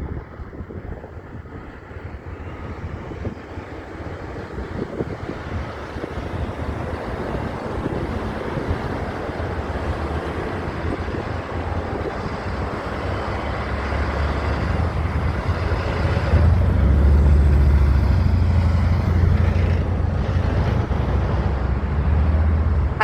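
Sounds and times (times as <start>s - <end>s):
heavy truck driving past: 5.4s - 23.0s.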